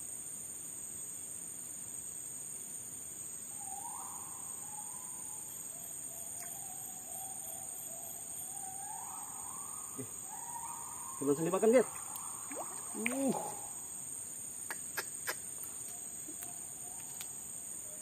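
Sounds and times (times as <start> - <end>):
high-pitched insect drone: 3.2 - 18.0
bird calling: 8.1 - 14.0, 14.6 - 18.0.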